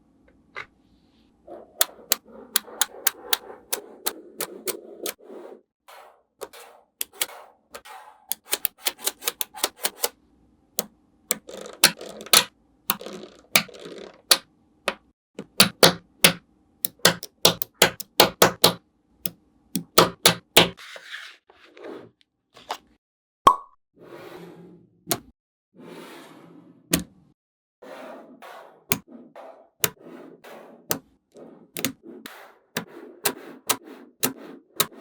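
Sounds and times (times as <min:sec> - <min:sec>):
magnetic balls clicking together: 0:01.8 - 0:05.2, 0:11.3 - 0:15.0, 0:15.6 - 0:18.8, 0:19.8 - 0:20.8.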